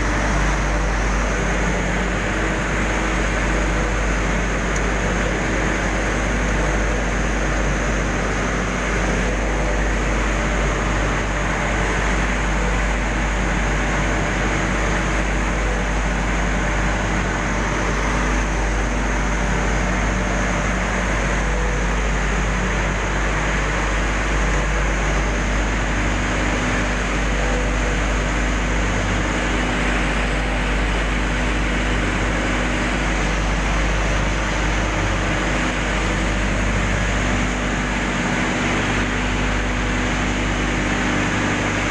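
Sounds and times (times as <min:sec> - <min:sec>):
industrial furnace humming: 0:00.0 - 0:41.9.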